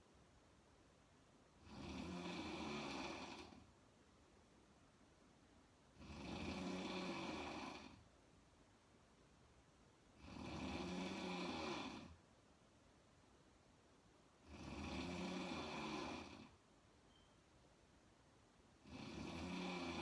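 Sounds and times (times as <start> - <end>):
woman snoring: 1.6 - 3.7, 6.0 - 8.0, 10.2 - 12.2, 14.4 - 16.6, 18.8 - 20.0.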